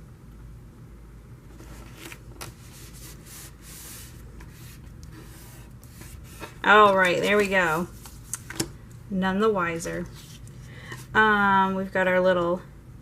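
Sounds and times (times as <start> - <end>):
cardstock rustling and rubbing: 1.5 - 8.7, 9.7 - 11.2.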